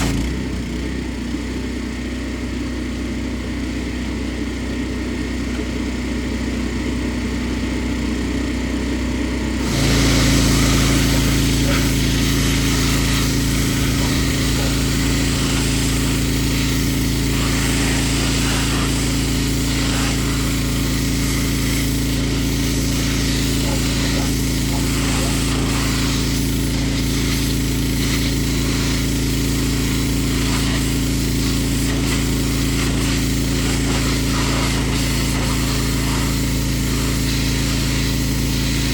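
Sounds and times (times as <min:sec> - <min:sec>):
pressure washer engine running: 0:00.0 - 0:38.9
spraying water hiss: 0:09.6 - 0:38.9.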